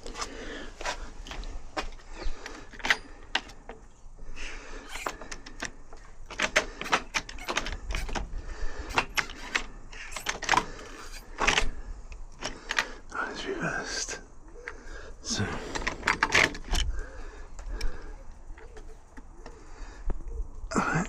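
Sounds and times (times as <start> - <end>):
metallic clicks of lock parts: 0.8 - 3.9, 4.8 - 13.1, 14.6 - 19.6.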